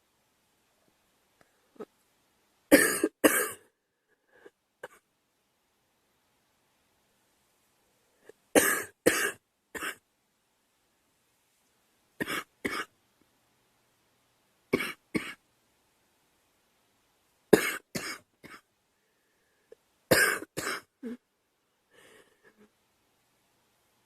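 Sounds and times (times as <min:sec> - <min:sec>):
girl coughing: 0:02.7 - 0:03.7, 0:08.6 - 0:10.0, 0:12.2 - 0:12.9, 0:14.8 - 0:15.4, 0:17.6 - 0:18.6, 0:20.1 - 0:21.2.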